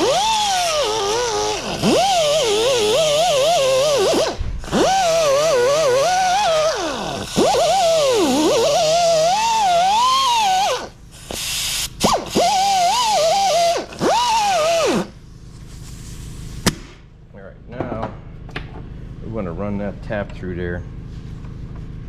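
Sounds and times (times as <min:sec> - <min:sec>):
rotary grinder whining: 0:00.0 - 0:11.0, 0:12.2 - 0:15.2.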